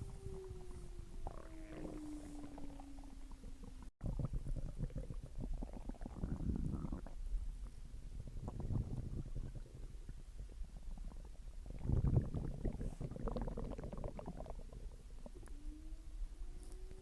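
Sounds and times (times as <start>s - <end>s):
thin whining tone: 0.0s - 3.9s
stomach growling and gurgling: 0.0s - 17.0s.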